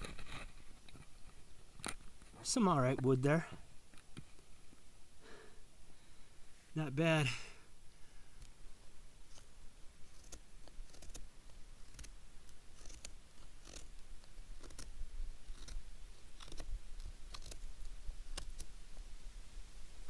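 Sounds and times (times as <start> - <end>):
knife scraping wood shavings: 9.2 - 17.7.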